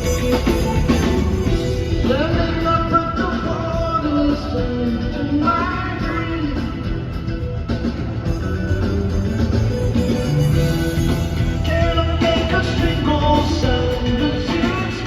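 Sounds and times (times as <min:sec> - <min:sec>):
guitar rock music: 0:00.0 - 0:15.0
person singing: 0:10.5 - 0:15.0.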